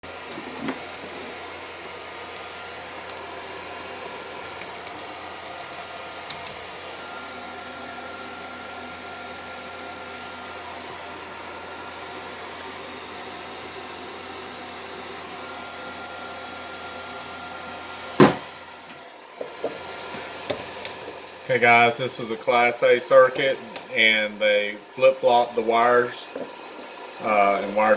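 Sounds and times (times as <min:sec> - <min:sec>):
sharp loud pop: 0:18.2 - 0:18.5
speaker circuit hiss: 0:19.4 - 0:27.9.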